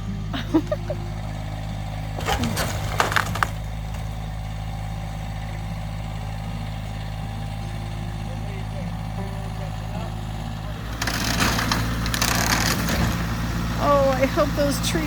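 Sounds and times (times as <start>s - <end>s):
steady engine hum: 0.0s - 15.0s
timbers cracking and snapping: 1.2s - 7.6s, 10.3s - 14.3s.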